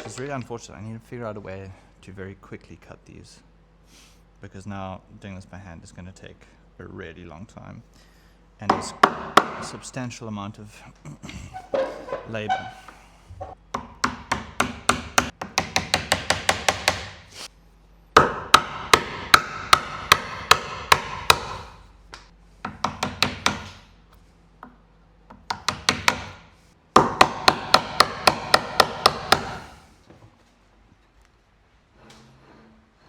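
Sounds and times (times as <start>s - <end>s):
wood chisel being struck: 8.7s - 9.8s, 13.7s - 17.3s, 18.2s - 21.8s, 22.6s - 23.9s, 24.6s - 26.4s, 27.0s - 29.8s.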